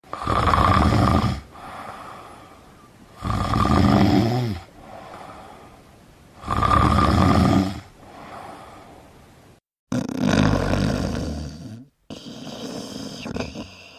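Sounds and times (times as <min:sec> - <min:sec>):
person snoring: 0:00.1 - 0:02.5, 0:03.2 - 0:05.6, 0:06.4 - 0:08.7, 0:09.9 - 0:13.9
quiet long breath: 0:01.4 - 0:02.9, 0:04.7 - 0:06.0, 0:07.9 - 0:09.3.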